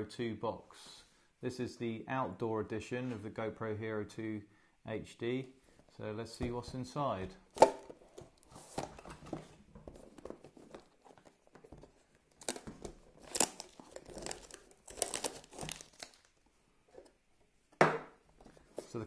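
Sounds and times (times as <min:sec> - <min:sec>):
box packaging crinkling and tearing: 0:09.9 - 0:16.4.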